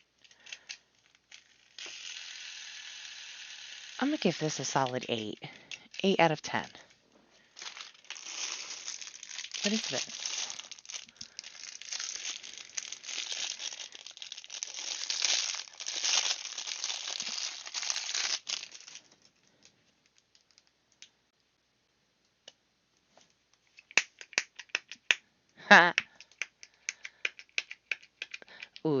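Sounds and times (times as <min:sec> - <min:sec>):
plastic packaging crinkling and tearing: 0:00.0 - 0:07.0, 0:07.6 - 0:20.8.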